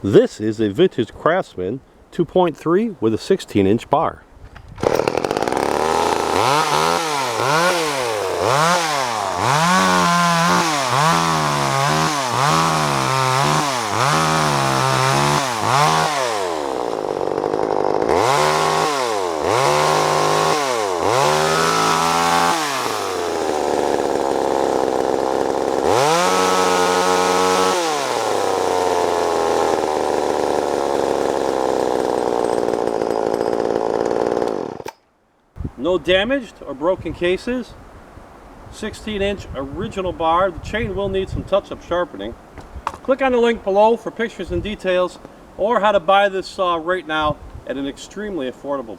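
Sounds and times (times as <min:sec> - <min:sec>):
chainsaw revving: 0:04.8 - 0:35.0.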